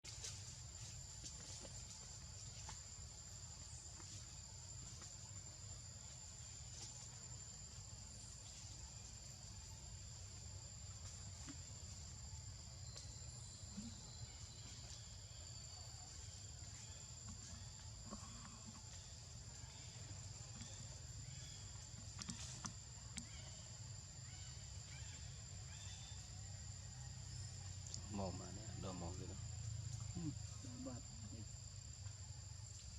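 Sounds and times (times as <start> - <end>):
high-pitched insect drone: 0.3 - 32.9
small ticks: 21.4 - 23.5.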